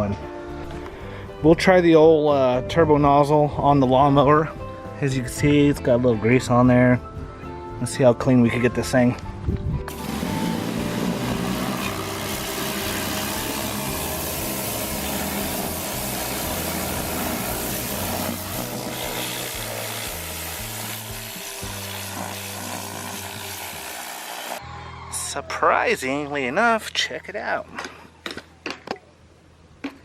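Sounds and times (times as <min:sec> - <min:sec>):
background music: 0:00.0 - 0:27.4
pressure washer jet hissing: 0:09.9 - 0:24.6.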